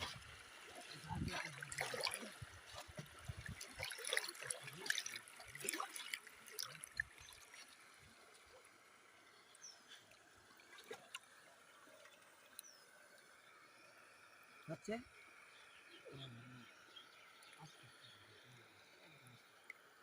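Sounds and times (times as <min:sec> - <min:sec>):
shallow water splashing: 0:00.0 - 0:16.0.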